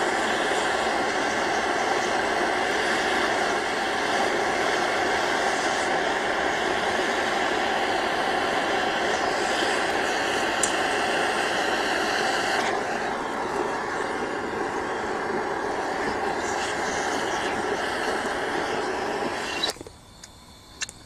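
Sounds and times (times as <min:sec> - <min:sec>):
blowtorch flame hissing: 0:00.0 - 0:21.0.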